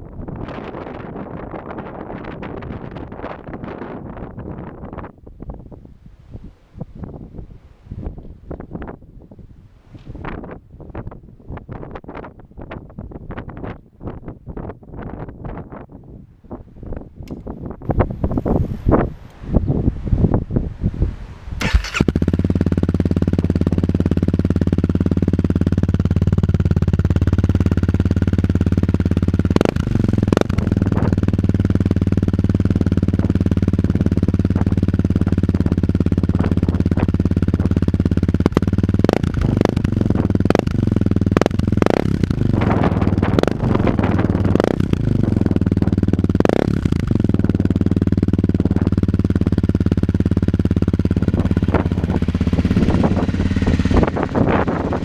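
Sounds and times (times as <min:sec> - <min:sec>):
engine revving bursts: 0:21.6 - 0:55.0
motorcycle engine starting and idling: 0:21.6 - 0:55.0.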